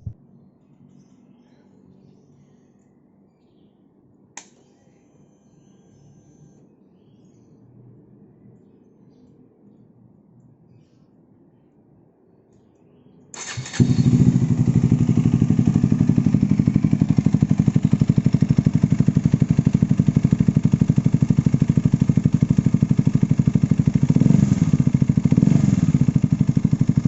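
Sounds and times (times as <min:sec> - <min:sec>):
electric starter cranking: 0:13.4 - 0:14.8
motorcycle engine idling: 0:13.4 - 0:27.0
motorcycle engine revving: 0:13.4 - 0:27.0.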